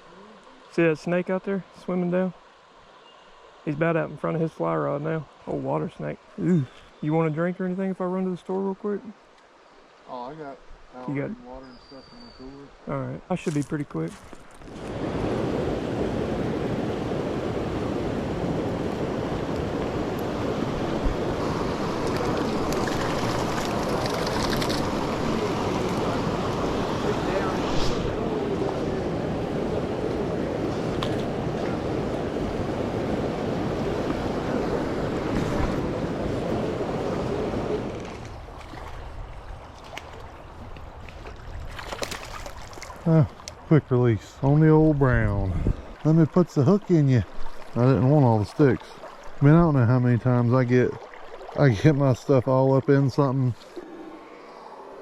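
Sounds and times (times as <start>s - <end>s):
creek water rushing: 0.0s - 55.0s
wind on microphone: 14.7s - 41.9s, 44.9s - 46.0s.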